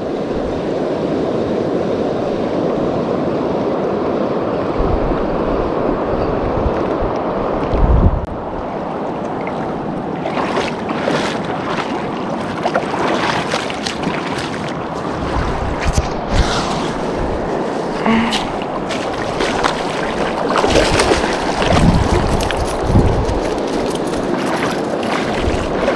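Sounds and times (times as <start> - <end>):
wind buffeting microphone: 0.0 - 25.9
river rapids rushing: 9.6 - 25.9.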